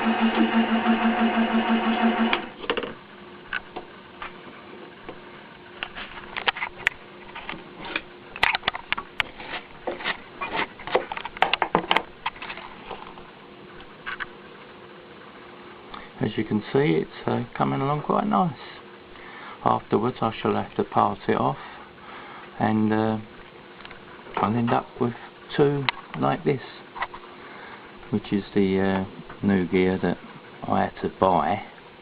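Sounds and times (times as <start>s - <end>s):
milling machine drone: 0.0s - 2.6s.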